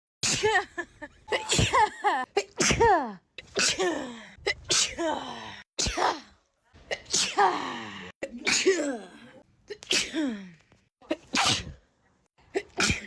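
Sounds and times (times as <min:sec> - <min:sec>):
person sneezing: 0:00.2 - 0:00.6, 0:01.3 - 0:06.3, 0:06.9 - 0:09.1, 0:09.7 - 0:10.4, 0:11.2 - 0:11.8, 0:12.6 - 0:13.0.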